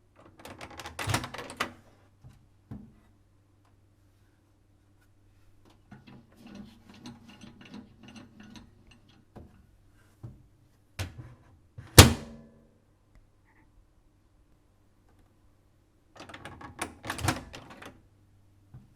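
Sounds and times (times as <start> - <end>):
microwave door clicks and rattles: 11.9 - 12.5, 16.2 - 18.0.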